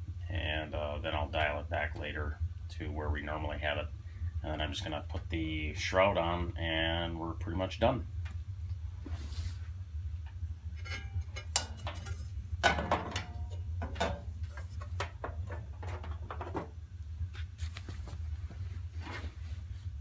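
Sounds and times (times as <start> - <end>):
sheet metal clanking and scraping: 10.6 - 16.7.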